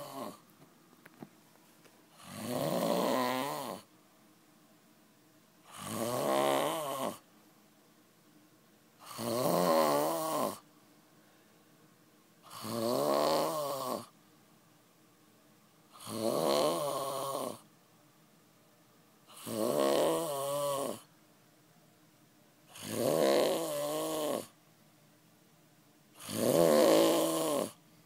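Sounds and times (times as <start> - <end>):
man snoring: 0.0 - 0.4, 2.2 - 3.9, 5.7 - 7.2, 9.0 - 10.6, 12.5 - 14.1, 16.0 - 17.6, 19.3 - 21.1, 22.7 - 24.5, 26.2 - 27.8.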